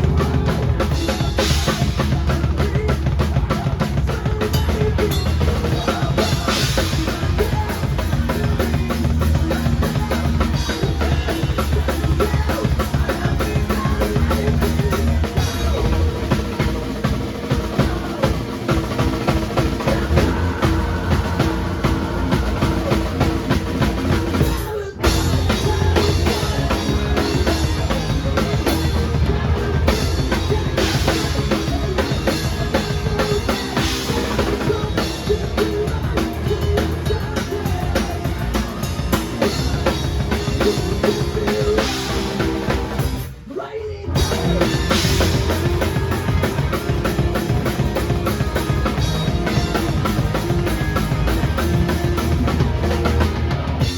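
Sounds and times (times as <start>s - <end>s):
drum kit playing: 0.0s - 43.5s, 44.2s - 53.9s
recorded song with bass line: 0.0s - 53.9s.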